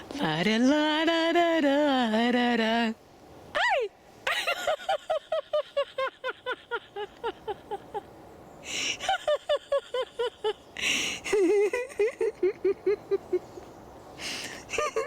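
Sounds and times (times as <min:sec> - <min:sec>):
person laughing hard: 0:04.3 - 0:08.1, 0:08.9 - 0:13.5, 0:14.6 - 0:15.0.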